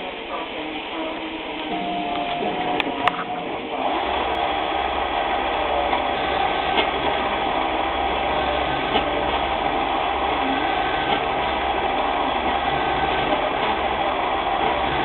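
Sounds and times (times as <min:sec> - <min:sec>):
lathe spindle and gears humming: 0:00.0 - 0:15.0.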